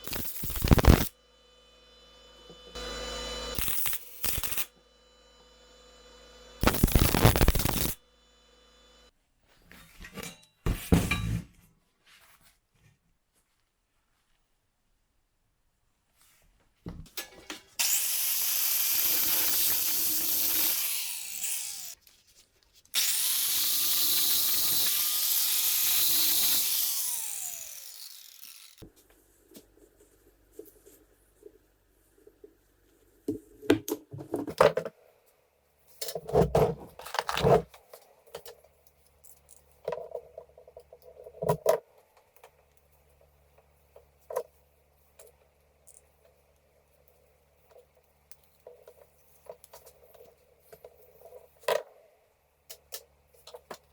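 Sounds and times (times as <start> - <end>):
power tool motor running: 0.0 - 9.1, 17.8 - 22.0, 23.0 - 28.8.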